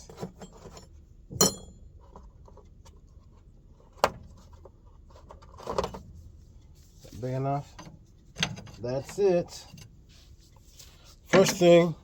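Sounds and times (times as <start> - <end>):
metal wrenches clinking: 1.4 - 1.8.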